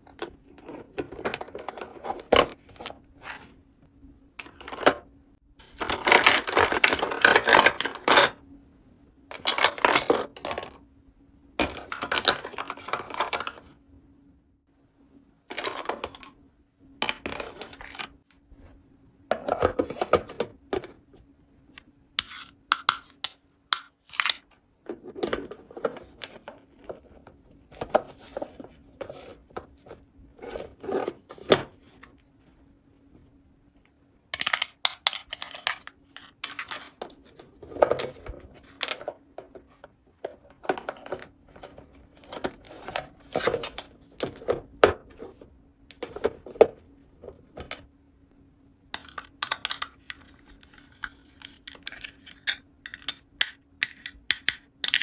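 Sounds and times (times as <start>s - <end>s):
plastic toy pieces clattering: 49.0s - 55.0s.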